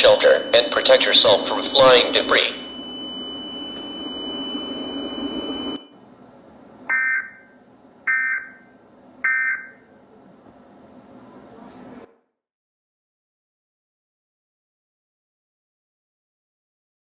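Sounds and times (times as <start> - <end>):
harsh digital data bursts: 0.0 - 5.8.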